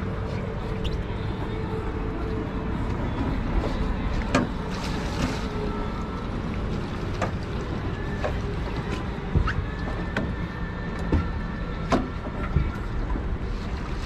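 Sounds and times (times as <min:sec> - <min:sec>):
wind and water rumble: 0:00.0 - 0:14.0.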